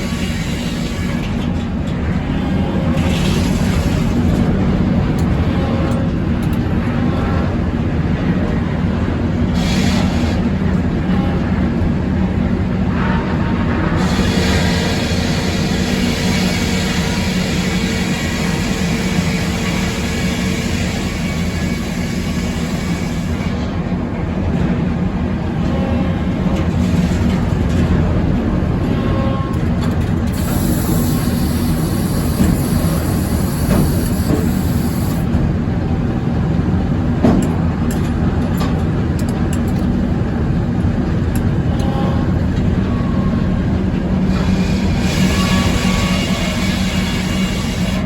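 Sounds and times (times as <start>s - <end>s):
circular sawmill running: 0.0s - 48.0s
saw blade cutting wood: 44.3s - 48.0s.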